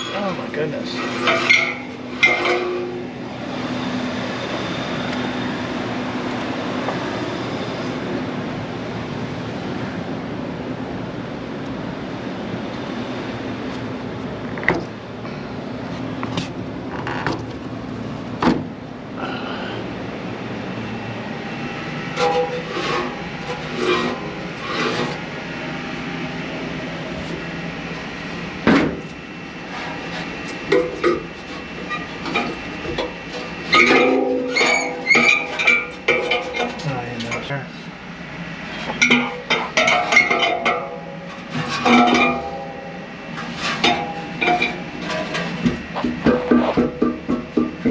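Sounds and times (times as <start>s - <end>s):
fan humming: 0.0s - 47.9s
high squealing: 33.7s - 35.9s.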